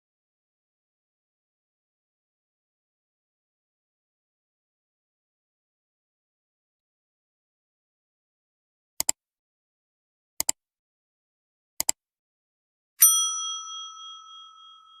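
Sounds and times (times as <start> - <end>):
bell ding: 13.0 - 15.0.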